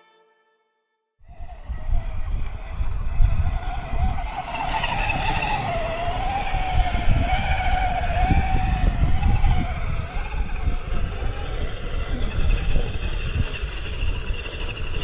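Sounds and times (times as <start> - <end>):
electric motor whining: 1.3 - 15.0.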